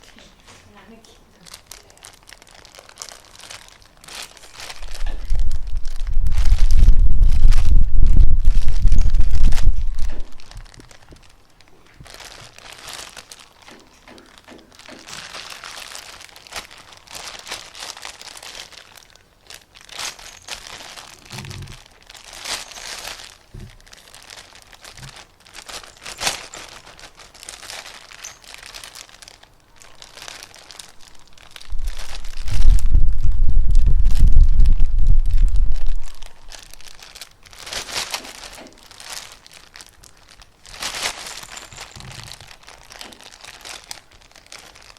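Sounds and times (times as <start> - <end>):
crinkly material crumpling: 0.0 - 44.9
loud low rumble: 4.6 - 10.7, 31.2 - 36.9.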